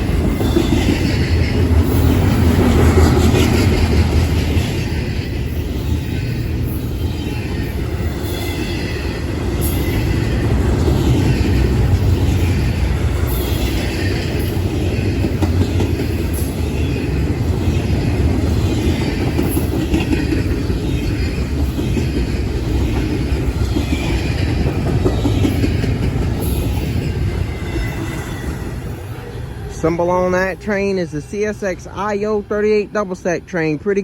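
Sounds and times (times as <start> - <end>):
clickety-clack of rail joints: 0.0 - 29.2
freight train rumbling past: 0.0 - 34.0.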